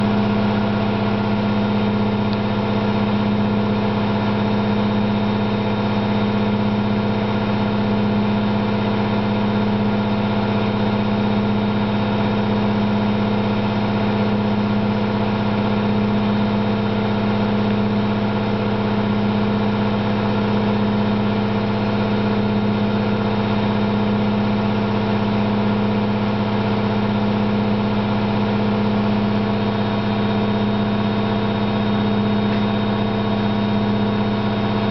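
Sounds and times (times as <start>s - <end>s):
washing machine spinning: 0.0s - 34.9s.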